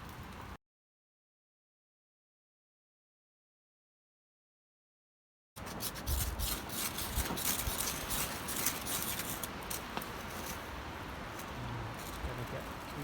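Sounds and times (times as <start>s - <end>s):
twig stove crackling: 0.0s - 0.6s, 5.6s - 13.0s
wind rumbling on microphone: 5.9s - 13.0s.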